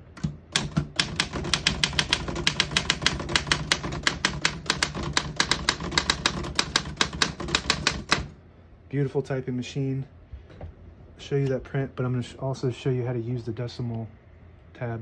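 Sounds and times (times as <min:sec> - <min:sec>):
manual typewriter typing: 0:00.0 - 0:08.4.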